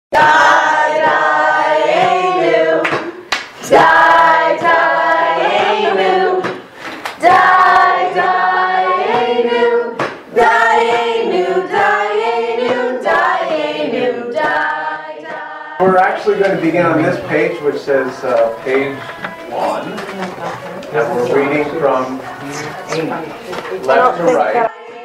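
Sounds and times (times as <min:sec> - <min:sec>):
group singing: 0:00.1 - 0:25.0
hands clapping: 0:02.8 - 0:03.9, 0:06.4 - 0:08.3, 0:14.4 - 0:16.7, 0:17.8 - 0:21.0, 0:21.8 - 0:25.0.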